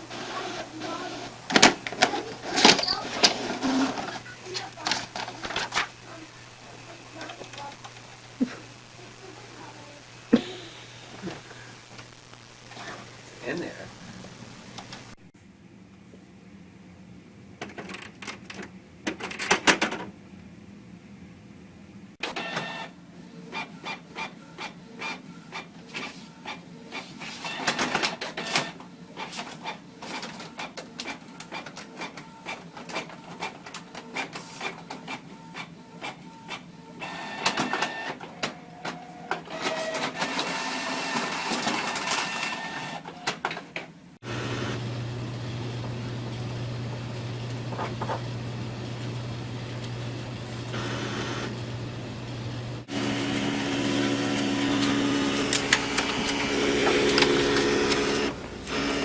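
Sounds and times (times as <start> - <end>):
motor whine: 44.2 - 59.0
printer mechanism clicking: 54.2 - 59.0.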